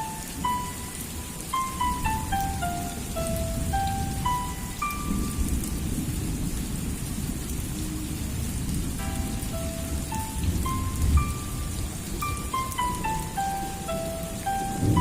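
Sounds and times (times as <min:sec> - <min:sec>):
soft single-note melody: 0:00.0 - 0:06.0, 0:09.0 - 0:15.0
rain pouring on plants: 0:00.0 - 0:15.0.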